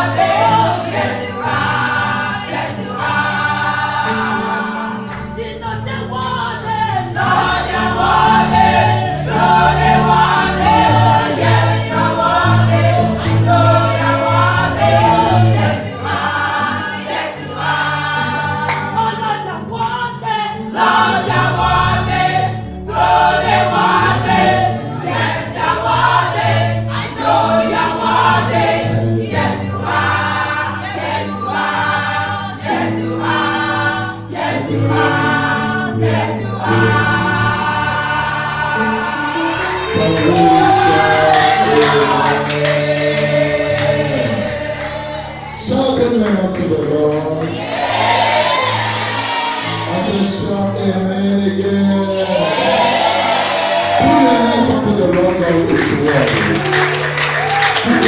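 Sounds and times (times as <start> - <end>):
gospel choir singing: 0.0 - 58.0
instrumental accompaniment: 0.0 - 58.0
steady bass line: 53.9 - 55.6.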